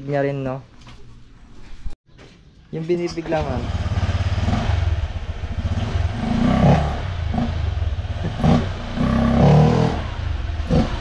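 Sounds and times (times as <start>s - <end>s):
scooter engine revving: 3.4s - 11.0s.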